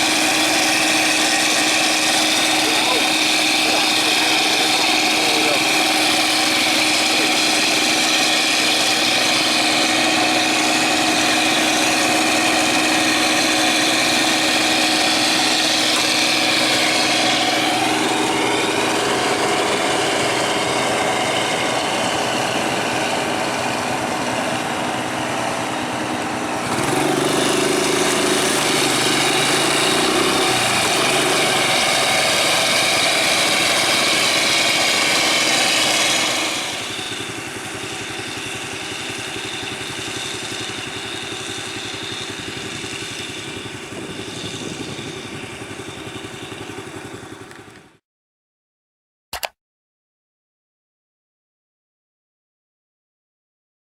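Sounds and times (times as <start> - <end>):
heavy diesel engines running: 0.0 - 48.0.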